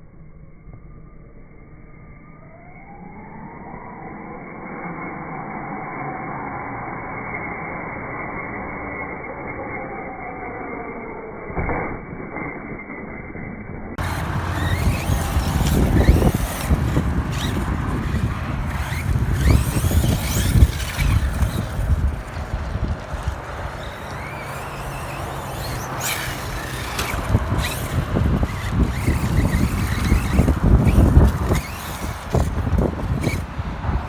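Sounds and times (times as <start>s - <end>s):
electric motors whining: 14.0s - 34.0s
tyres rumbling and knocking: 14.0s - 34.0s.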